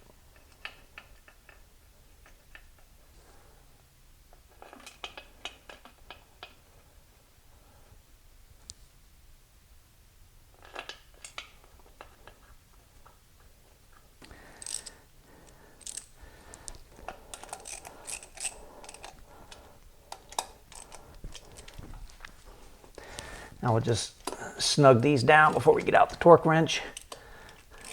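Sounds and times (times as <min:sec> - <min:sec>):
metal bolts and tools clinking: 0:14.6 - 0:14.9, 0:15.8 - 0:16.2, 0:26.8 - 0:27.9.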